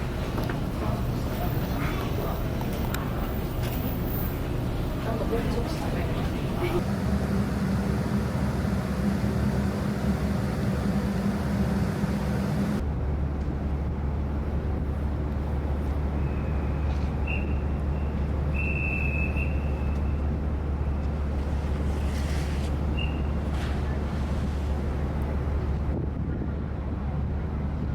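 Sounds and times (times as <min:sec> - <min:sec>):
ship engines humming: 0:00.0 - 0:26.0
faint high whistles: 0:16.2 - 0:20.2, 0:22.9 - 0:23.4.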